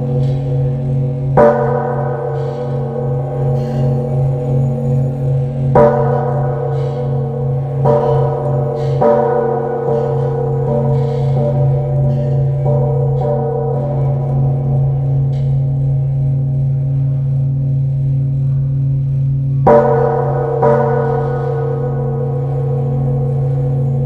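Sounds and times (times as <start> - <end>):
temple bell ringing: 0.0 - 24.0.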